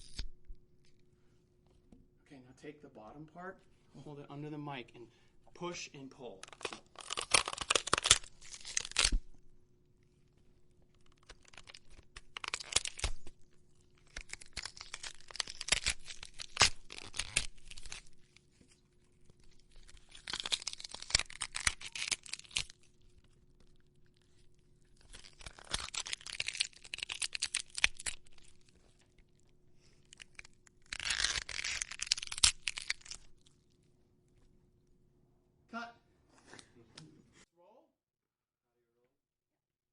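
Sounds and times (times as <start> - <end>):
crunching tearing crackles: 0.0 - 0.4, 6.4 - 9.3, 10.8 - 33.8.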